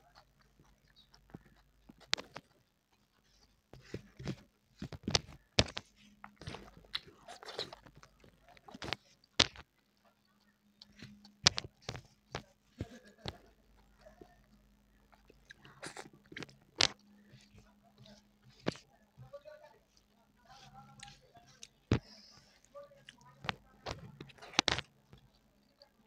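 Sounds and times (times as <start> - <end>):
mouth clicks and wet smacks: 0.0 - 10.1
person chewing food: 0.0 - 26.0.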